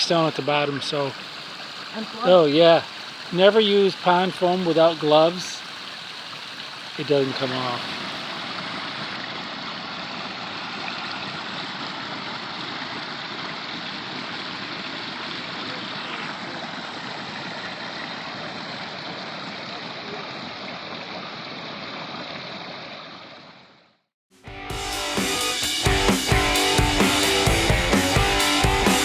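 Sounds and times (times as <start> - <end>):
water splashing down rocks: 0.0 - 21.3.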